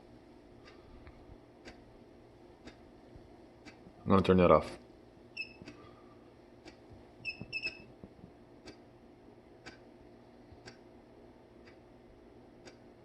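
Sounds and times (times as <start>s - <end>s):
short electronic beeps: 5.4s - 5.6s, 7.2s - 7.9s.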